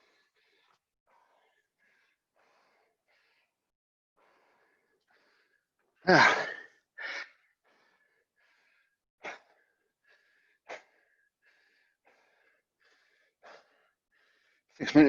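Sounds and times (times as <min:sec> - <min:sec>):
man gasping and panting: 0:04.2 - 0:14.8.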